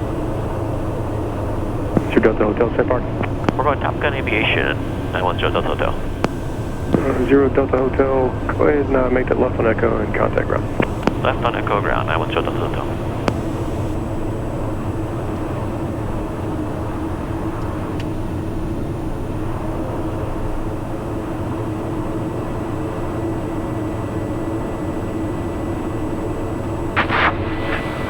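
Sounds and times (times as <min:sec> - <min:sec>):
turboprop cockpit drone: 0:00.0 - 0:28.0
brief crackling burst: 0:27.0 - 0:28.0.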